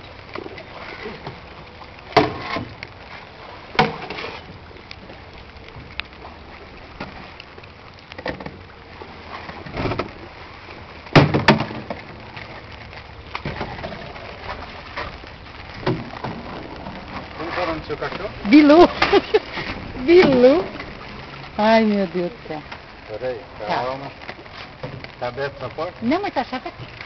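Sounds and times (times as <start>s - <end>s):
water against boat hull: 0.0s - 27.0s
sharp knocks on boat: 3.7s - 4.2s, 11.1s - 12.2s, 15.8s - 16.5s.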